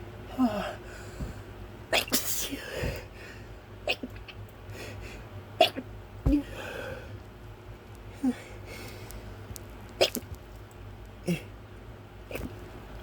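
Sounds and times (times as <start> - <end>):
breathy exhale: 6.4 - 7.2.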